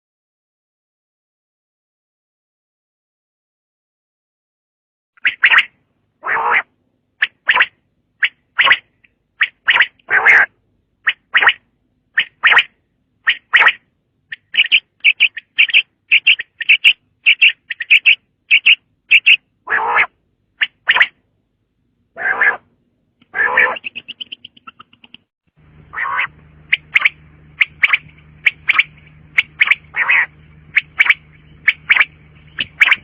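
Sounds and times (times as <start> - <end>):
quail calling: 5.2 - 11.6, 12.2 - 21.2, 22.2 - 25.2, 25.9 - 33.0.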